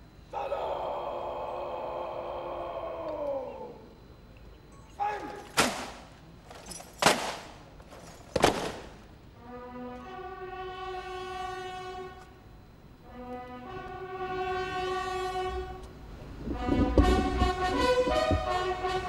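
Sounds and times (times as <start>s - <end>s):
loud sharp bangs echoing: 5.5s - 6.1s, 7.0s - 7.6s, 8.4s - 9.1s
brass music with held chords: 9.3s - 19.0s.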